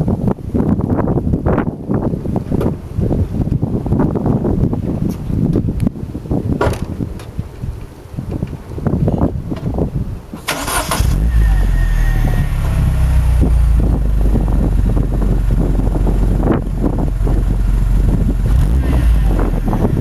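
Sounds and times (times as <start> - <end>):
car starter whir: 10.4 - 13.8
car engine idling: 10.6 - 20.0.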